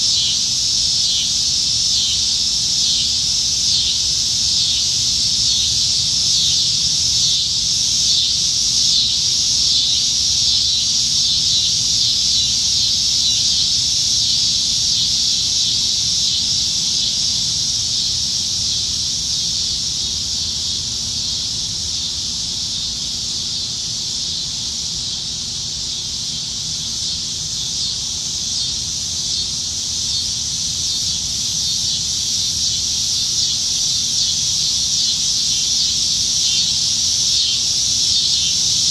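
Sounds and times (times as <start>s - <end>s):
cicadas buzzing: 0.0s - 38.9s.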